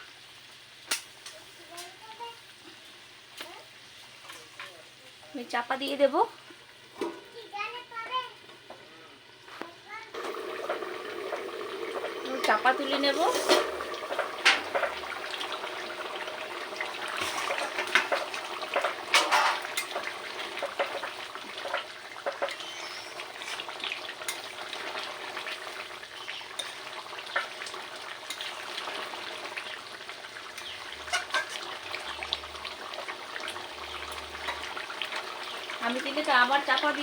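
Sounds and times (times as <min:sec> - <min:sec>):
gravy bubbling in a pot: 0:10.2 - 0:37.0.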